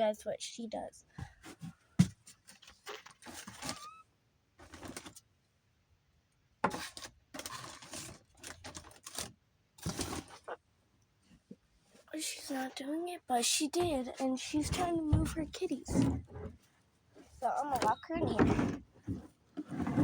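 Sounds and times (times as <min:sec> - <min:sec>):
rustling and clattering objects: 0:01.2 - 0:04.0, 0:04.6 - 0:05.3, 0:06.6 - 0:10.6, 0:13.6 - 0:20.0.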